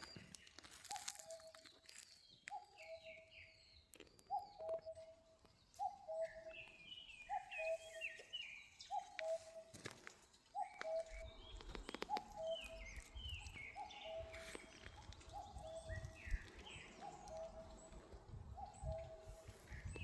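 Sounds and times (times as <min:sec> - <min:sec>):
birds chirping: 0:00.0 - 0:20.0.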